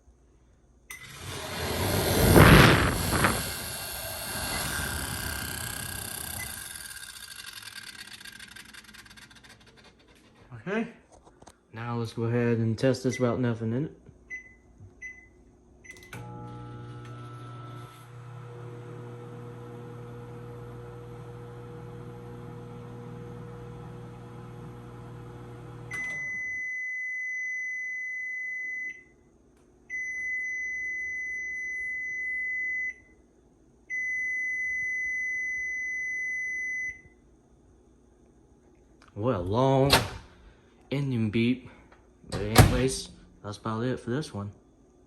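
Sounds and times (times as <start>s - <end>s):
microwave oven humming: 3.0s - 9.2s, 15.8s - 26.8s
microwave long beeps: 4.4s - 6.9s, 14.3s - 29.3s, 29.9s - 33.2s, 33.9s - 37.2s.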